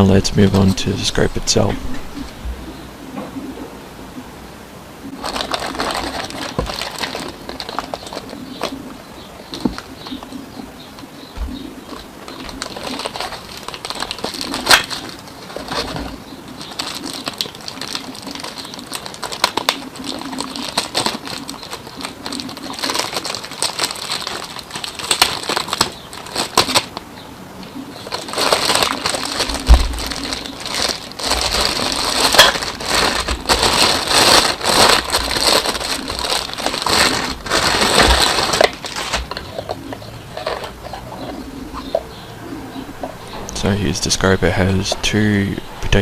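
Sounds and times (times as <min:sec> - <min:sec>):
plastic packaging crinkling: 0:05.1 - 0:08.8, 0:09.4 - 0:10.4, 0:11.8 - 0:27.0, 0:27.8 - 0:41.0.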